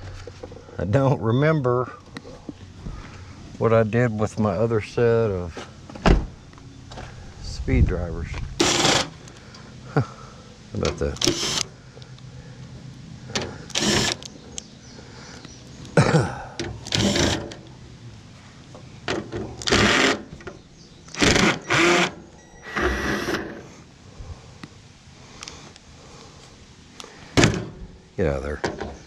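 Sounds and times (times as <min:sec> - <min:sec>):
cordless drill running: 0:08.6 - 0:09.2, 0:13.7 - 0:14.2, 0:16.9 - 0:17.4, 0:19.6 - 0:20.3, 0:21.1 - 0:23.6.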